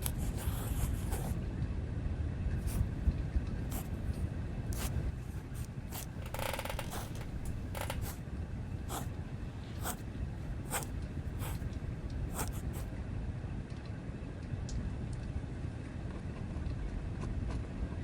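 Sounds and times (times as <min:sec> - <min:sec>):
pen scratching on paper: 0:00.0 - 0:01.4, 0:02.6 - 0:12.9.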